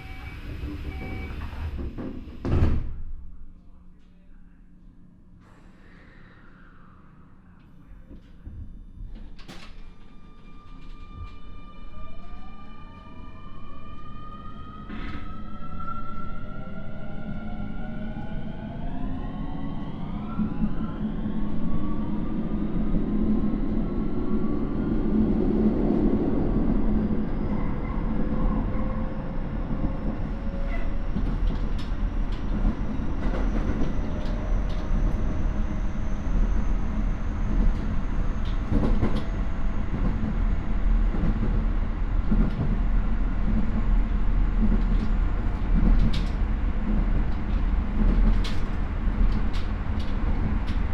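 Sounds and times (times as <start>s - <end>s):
train rolling noise: 20.1s - 50.9s.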